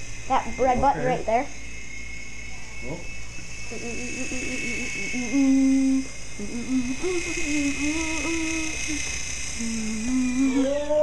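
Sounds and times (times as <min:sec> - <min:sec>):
toy helicopter motor whine: 0:00.0 - 0:11.0
person humming a tune: 0:03.7 - 0:11.0.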